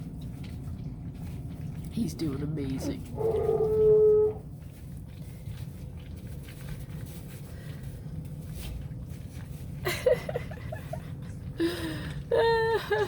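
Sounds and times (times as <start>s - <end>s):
puppies scratching: 0.0s - 10.0s.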